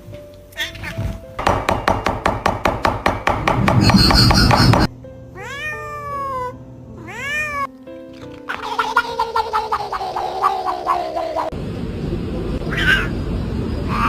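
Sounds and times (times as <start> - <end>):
meow-like animal calls: 0.5 - 1.2, 5.4 - 7.7, 8.5 - 11.5, 12.6 - 13.2.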